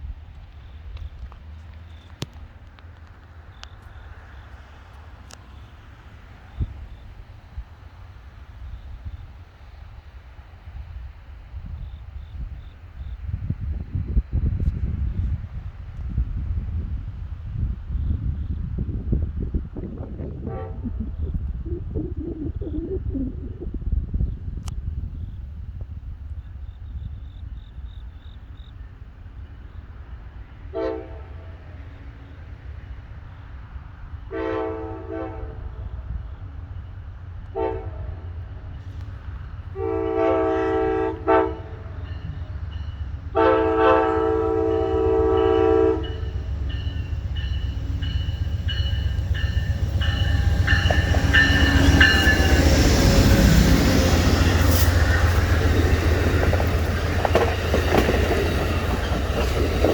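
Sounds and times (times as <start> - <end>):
train rumble and wheel clatter: 0.0 - 59.9
train horn blasts: 20.3 - 21.0, 30.7 - 31.8, 34.2 - 36.0, 37.4 - 38.4, 39.7 - 55.9.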